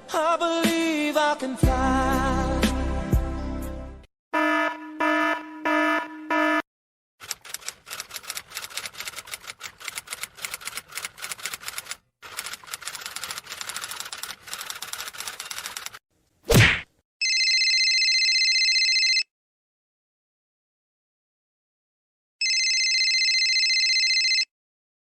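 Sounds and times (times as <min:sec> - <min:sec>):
electronic alarm beeping: 0:04.4 - 0:06.6
rapid clicking: 0:07.2 - 0:16.0.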